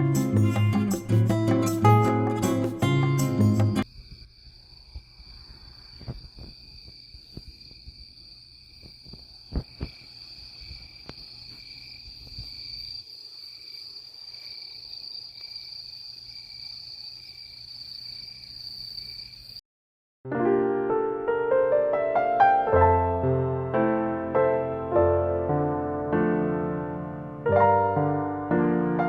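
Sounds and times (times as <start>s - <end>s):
insects trilling high: 3.8s - 19.6s.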